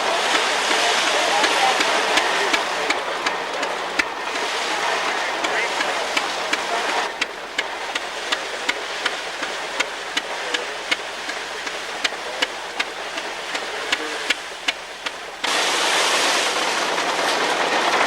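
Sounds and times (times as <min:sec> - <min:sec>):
machine clicking: 0:00.0 - 0:15.8
steady hiss: 0:00.0 - 0:18.0.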